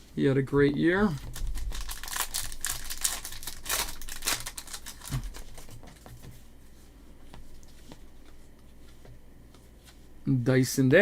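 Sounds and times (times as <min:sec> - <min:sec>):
cards clicking and rustling: 0:01.2 - 0:06.3.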